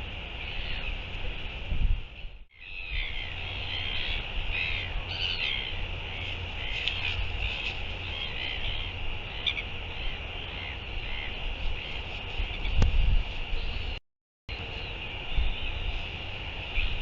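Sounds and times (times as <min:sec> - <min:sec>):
gulls calling: 0:00.0 - 0:01.1, 0:02.2 - 0:17.0
wind on microphone: 0:00.0 - 0:17.0.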